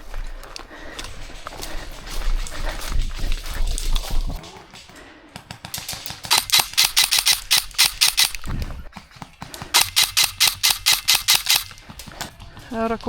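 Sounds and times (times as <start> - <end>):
airsoft gun shots: 5.8 - 8.5, 9.7 - 11.8.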